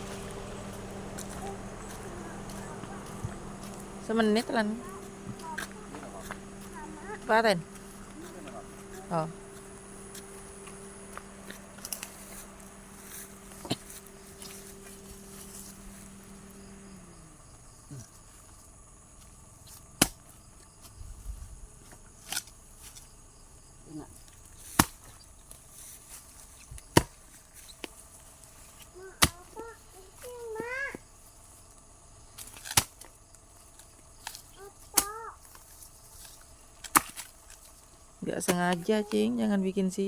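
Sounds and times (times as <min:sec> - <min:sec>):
low hum winding down: 0:00.0 - 0:31.0
shovel striking the ground: 0:36.9 - 0:37.3.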